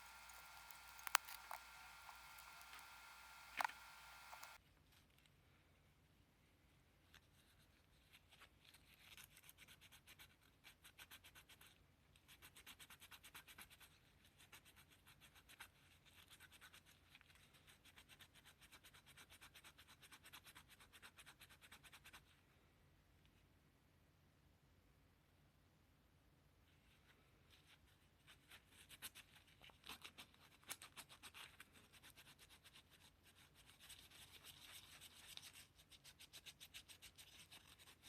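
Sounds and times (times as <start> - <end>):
rapid quiet scraping strokes: 0.0 - 4.6.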